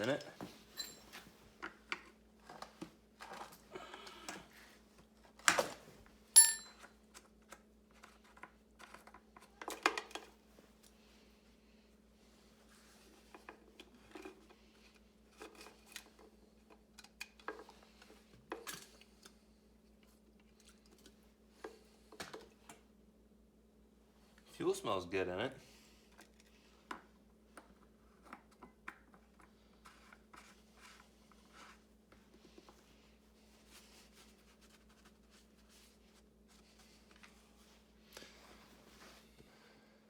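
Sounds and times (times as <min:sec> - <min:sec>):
ringing metallic clink: 0:00.8 - 0:01.1, 0:06.4 - 0:06.8.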